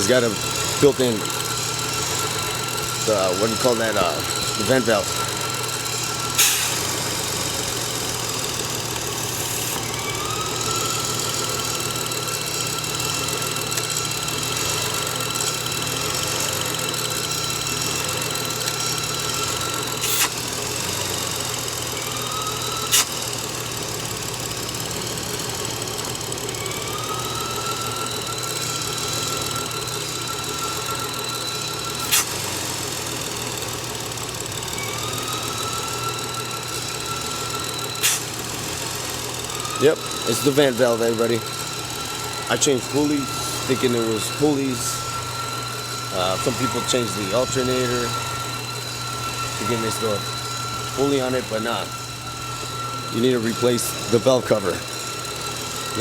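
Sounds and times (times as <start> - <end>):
car engine idling: 0.0 - 56.0
high-pitched whine: 0.0 - 56.0.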